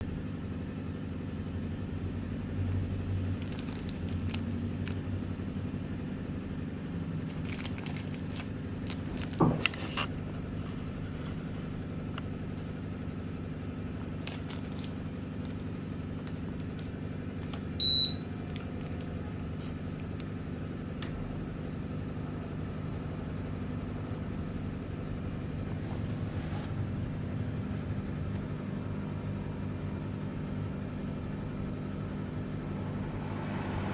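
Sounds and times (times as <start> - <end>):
air conditioner humming: 0.0 - 33.9
short high beep: 17.8 - 18.2.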